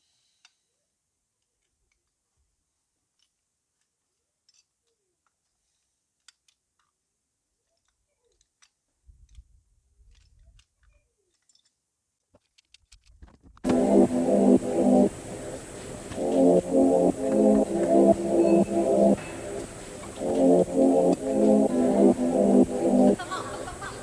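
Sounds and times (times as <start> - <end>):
faint low rumble: 13.7 - 24.0.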